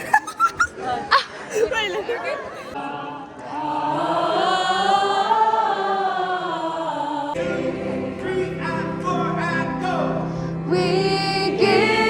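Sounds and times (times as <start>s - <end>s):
choir singing: 2.5s - 12.0s.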